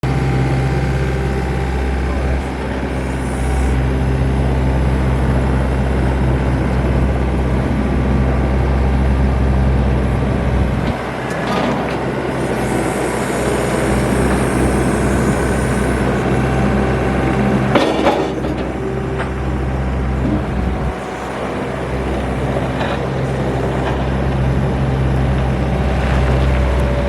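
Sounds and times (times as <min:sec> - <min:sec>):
diesel engine running: 0:00.0 - 0:27.0.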